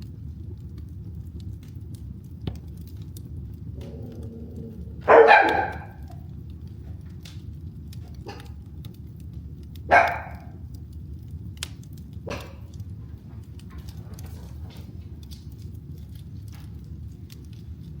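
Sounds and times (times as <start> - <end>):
wood fire crackling: 0.0 - 18.0
dog barking: 3.8 - 6.2, 8.1 - 8.6, 9.9 - 10.6, 12.3 - 12.7.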